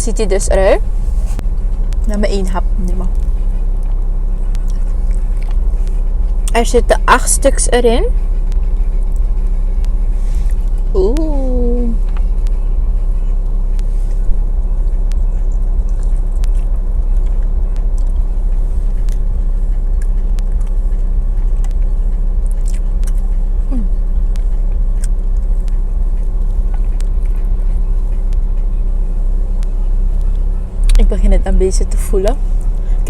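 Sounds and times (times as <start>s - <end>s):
steady low hum: 0.0s - 33.0s
person chewing food: 15.0s - 23.4s, 24.4s - 28.4s.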